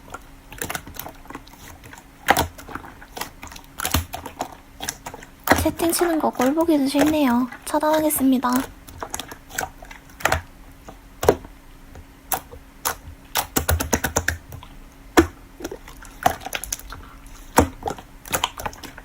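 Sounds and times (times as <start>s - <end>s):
slime clicking and popping: 2.2s - 7.4s, 12.3s - 19.0s.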